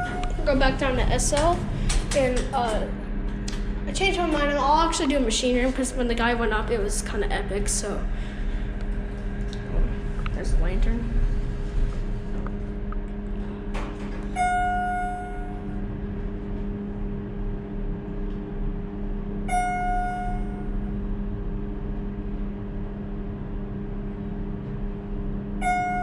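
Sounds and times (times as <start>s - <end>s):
elevator hum: 0.0s - 26.0s
electronic chime: 14.4s - 15.7s, 19.5s - 20.8s, 25.6s - 26.0s.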